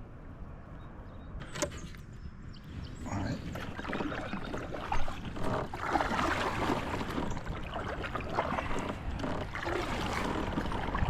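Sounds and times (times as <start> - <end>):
water splashing: 3.1 - 11.0.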